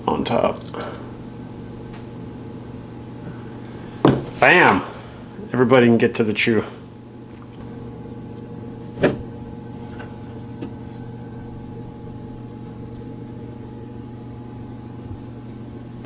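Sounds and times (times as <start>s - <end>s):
low machine hum: 0.0s - 16.0s
plastic parts clicking: 0.6s - 1.0s.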